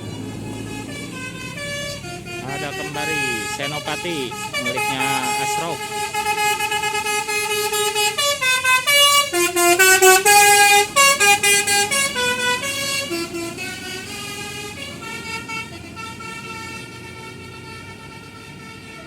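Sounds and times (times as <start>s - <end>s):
multi-tone air horn tune: 0.0s - 19.0s.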